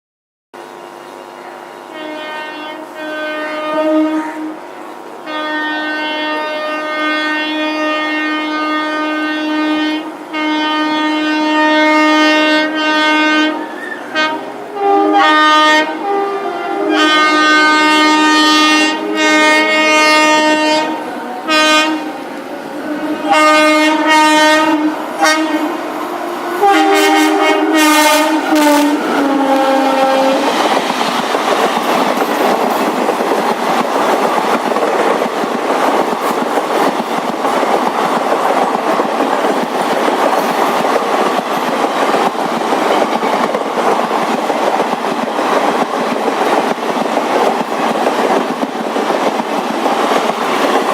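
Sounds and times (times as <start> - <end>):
locomotive horn blasts: 1.3 - 30.6
train wheels clattering: 26.6 - 50.9.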